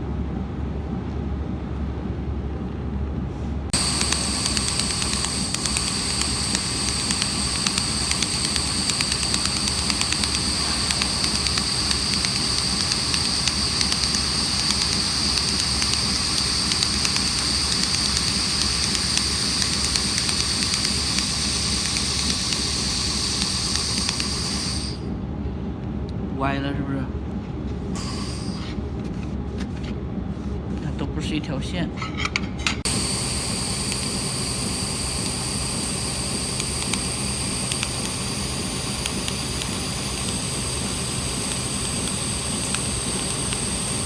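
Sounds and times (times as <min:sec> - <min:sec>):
low machine hum: 0:00.0 - 0:44.0
laser welder whine and hiss: 0:03.7 - 0:25.1, 0:27.9 - 0:28.9, 0:32.8 - 0:44.0.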